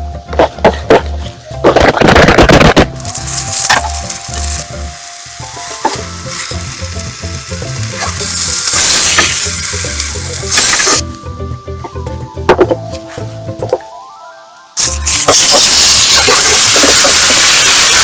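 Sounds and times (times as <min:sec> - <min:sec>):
background music: 0:00.0 - 0:18.0
food sizzling in a hot pan: 0:03.0 - 0:11.0, 0:14.7 - 0:18.0.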